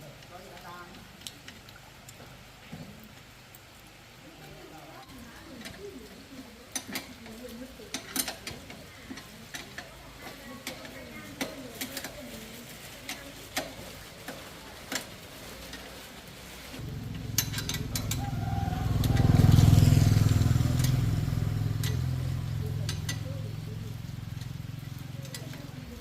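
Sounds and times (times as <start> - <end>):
motorcycle engine running: 16.8 - 26.0
light metallic clicks and taps: 17.3 - 18.2, 21.8 - 22.1, 22.7 - 23.4, 25.2 - 25.8.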